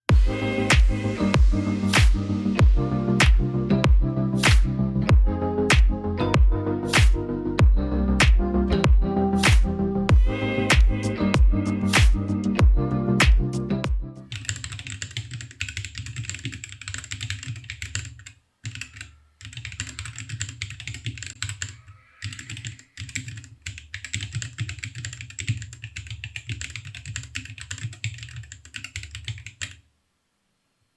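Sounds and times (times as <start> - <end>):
intro music: 0.1 - 14.3
fast typing on mechanical keyboard: 14.3 - 29.8.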